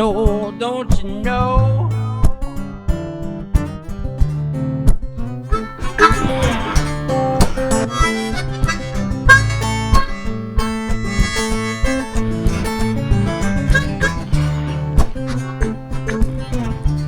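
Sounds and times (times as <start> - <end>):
harmonica melody: 5.4 - 17.0
strummed acoustic strings: 5.4 - 17.0.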